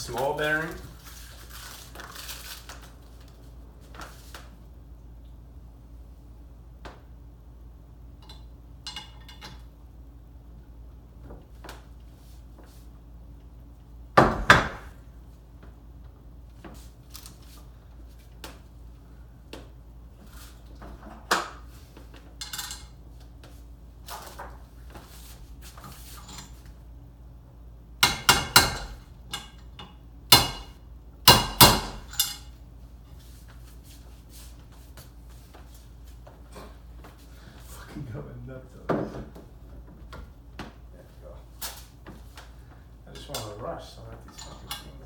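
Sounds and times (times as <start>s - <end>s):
hammer tapping on metal: 28.0s - 32.4s.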